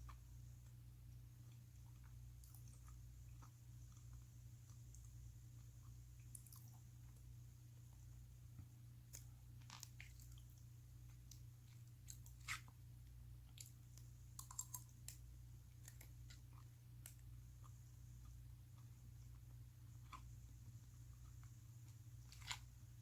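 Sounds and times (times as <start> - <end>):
steady low hum: 0.0 - 23.0
close chewing mouth clicks: 6.2 - 6.9, 13.5 - 15.2.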